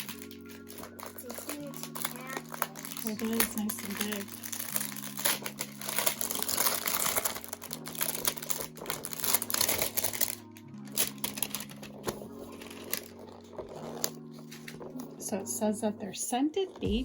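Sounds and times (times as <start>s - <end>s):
toy packaging rustling and clicking: 0.0s - 15.2s
soft background music: 0.0s - 17.0s.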